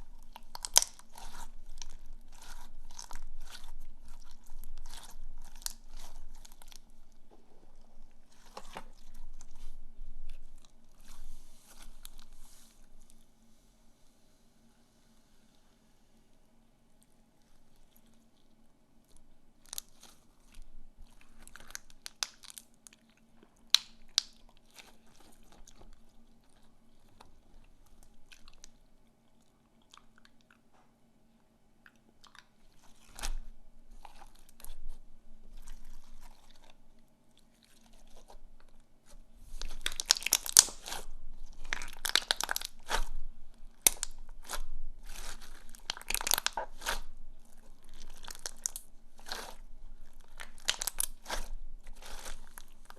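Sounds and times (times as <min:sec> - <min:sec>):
slime crackling and popping: 0:00.0 - 0:07.3, 0:19.6 - 0:23.0, 0:23.6 - 0:26.1, 0:37.7 - 0:52.9.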